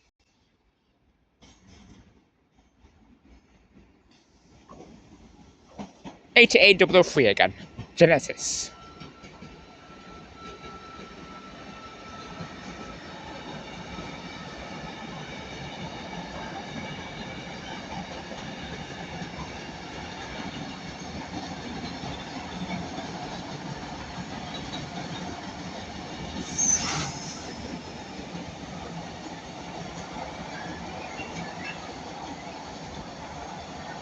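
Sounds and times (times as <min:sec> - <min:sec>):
train wheels rolling on rails: 0:01.4 - 0:34.0
high-pitched wheel squeal: 0:26.4 - 0:28.2.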